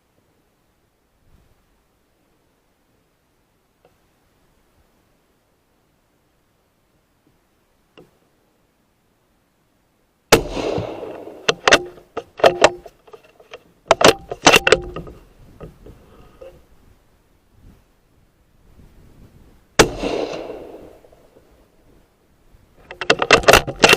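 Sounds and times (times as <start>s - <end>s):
suppressed rifle shot: 10.3s - 12.8s, 19.8s - 21.5s
rifle bolt clicks: 10.4s - 12.9s.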